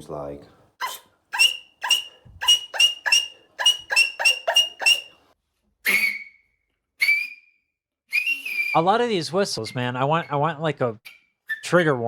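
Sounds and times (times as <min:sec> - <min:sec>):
mouth whistle chirps: 0:01.4 - 0:05.2, 0:05.8 - 0:09.0, 0:11.0 - 0:11.8.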